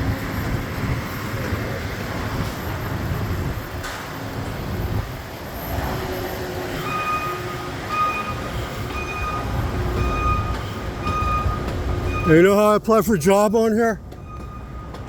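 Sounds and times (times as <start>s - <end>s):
street traffic rumble: 0.0s - 15.0s
backup alarm beeping: 6.4s - 15.0s.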